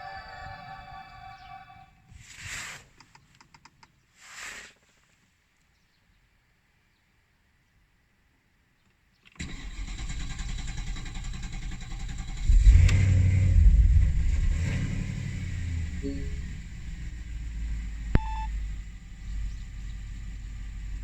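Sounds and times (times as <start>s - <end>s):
car engine starter cranking: 9.3s - 13.6s
car engine revving and idling: 9.8s - 21.0s.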